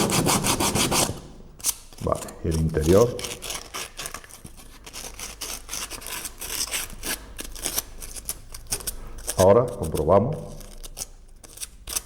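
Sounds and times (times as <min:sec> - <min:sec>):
sandpaper rubbing on plywood: 0:00.0 - 0:01.2.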